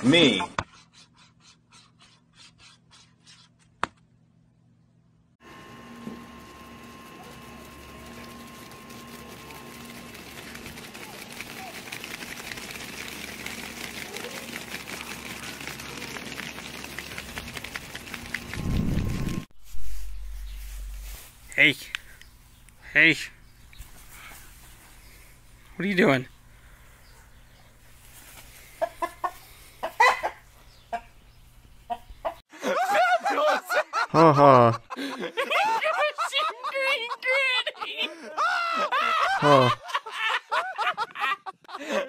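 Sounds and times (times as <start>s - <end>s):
low rumble: 18.4s - 21.3s.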